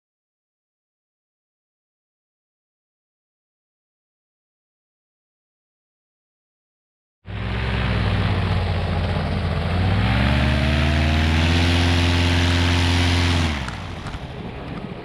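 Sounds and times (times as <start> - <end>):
paramotor engine and propeller: 7.3 - 15.0.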